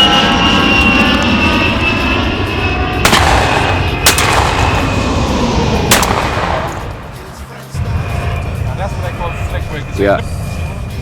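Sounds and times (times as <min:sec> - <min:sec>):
low rumble: 0:00.0 - 0:11.0
shotgun shots: 0:03.0 - 0:04.8, 0:05.9 - 0:06.9.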